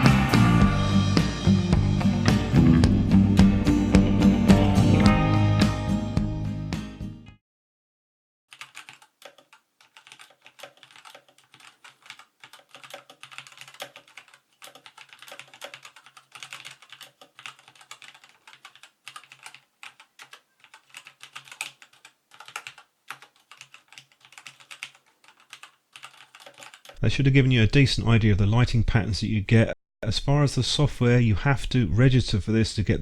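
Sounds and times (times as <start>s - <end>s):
mechanical keyboard typing: 8.5s - 27.0s.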